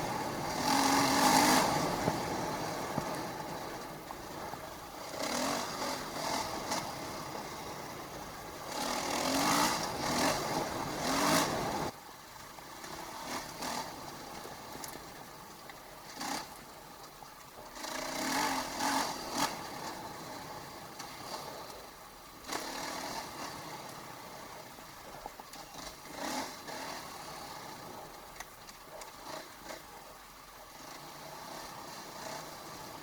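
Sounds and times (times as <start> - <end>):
motorcycle engine revving: 0.0 - 12.0, 12.8 - 14.6, 16.1 - 16.6, 17.7 - 21.7, 22.4 - 24.5, 25.6 - 28.1, 29.1 - 30.0, 30.7 - 33.0.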